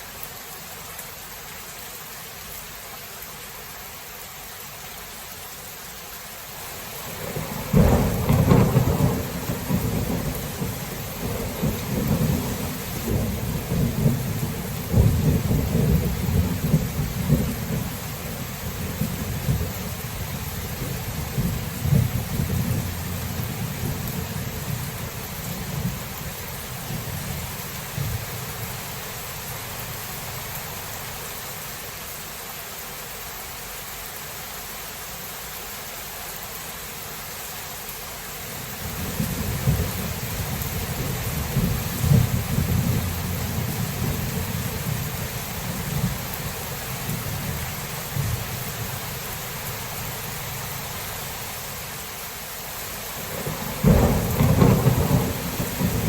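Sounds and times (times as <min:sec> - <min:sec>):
heavy rain: 0:00.0 - 0:56.0
rolling thunder: 0:07.2 - 0:28.5, 0:38.9 - 0:49.1, 0:53.2 - 0:56.0.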